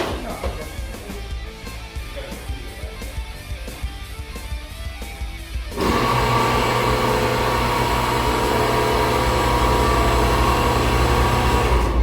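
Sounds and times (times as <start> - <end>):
cut-off wheel motor whine: 5.8 - 12.0.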